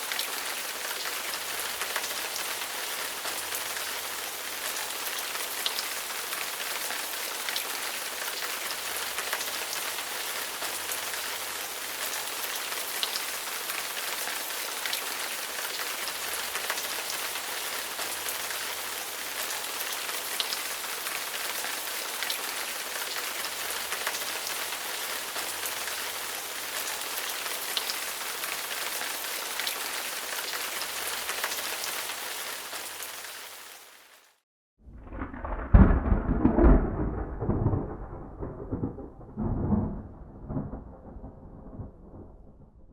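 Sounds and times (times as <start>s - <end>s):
steady rain falling: 0.0s - 34.4s, 35.1s - 42.8s
raindrop hits: 34.9s - 42.9s.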